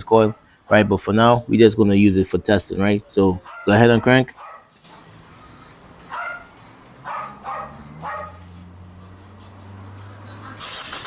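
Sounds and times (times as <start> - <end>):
dog barking: 3.4 - 5.1, 6.1 - 8.7.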